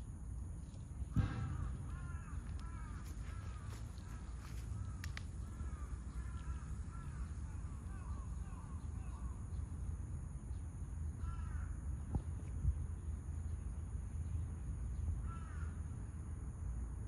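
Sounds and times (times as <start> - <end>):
steady low rumble: 0.0 - 17.0
birds calling: 1.0 - 9.7.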